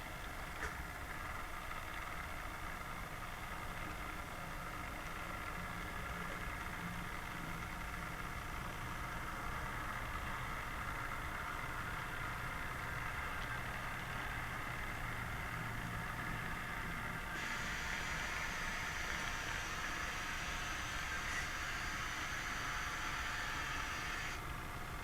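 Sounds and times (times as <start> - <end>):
model train motor and wheel hum: 0.0 - 25.0
hiss: 17.4 - 24.4.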